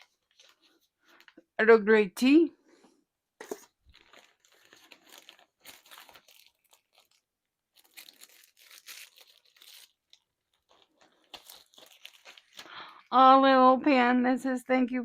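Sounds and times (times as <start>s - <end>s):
packaging crinkling and rustling: 0.0s - 1.5s, 3.4s - 13.1s.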